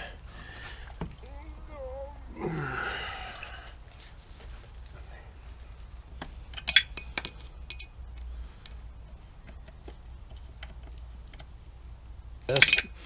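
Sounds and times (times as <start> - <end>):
wrench clinking on metal: 6.6 - 8.0, 12.5 - 13.0.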